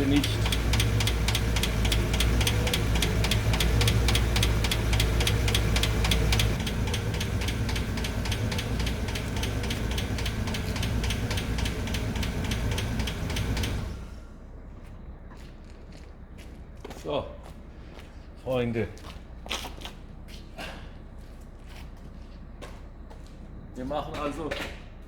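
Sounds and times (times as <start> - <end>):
valve train ticking rapidly: 0.0 - 14.1
engine running: 0.0 - 16.8.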